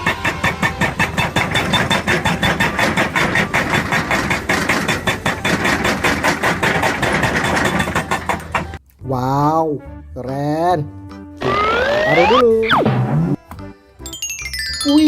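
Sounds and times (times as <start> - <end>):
excavator engine: 0.0 - 8.8, 11.4 - 12.4
rock breaker hammering: 0.0 - 8.8.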